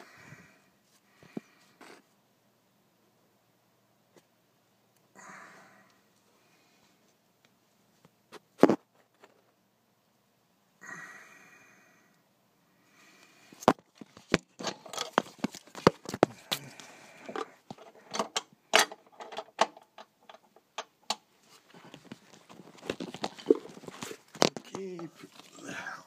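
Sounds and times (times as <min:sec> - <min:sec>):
metal tools clinking and knocking: 0:14.6 - 0:15.3, 0:17.7 - 0:20.5.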